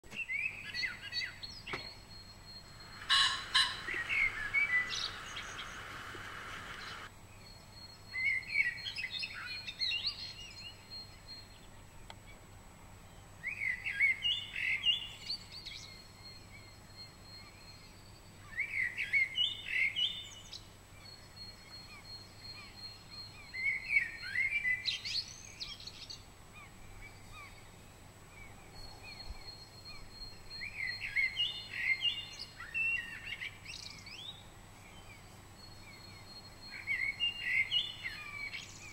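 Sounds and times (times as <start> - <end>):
songbird chirping: 0.0 - 38.9
pheasant crowing: 2.7 - 7.1
noisy rushing: 3.0 - 7.1.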